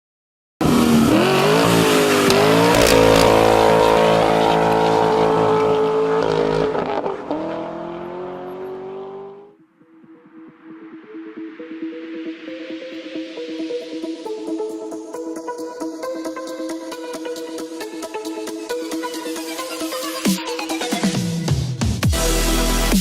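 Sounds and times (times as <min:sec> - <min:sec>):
car engine revving: 0:00.6 - 0:09.5.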